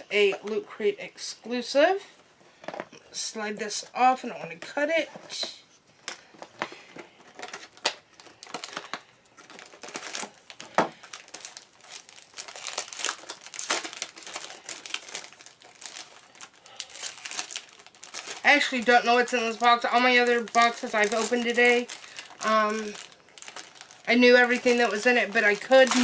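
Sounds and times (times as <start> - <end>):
packaging snapping: 6.1 - 18.5, 20.2 - 26.0
packaging crinkling and tearing: 6.1 - 26.0.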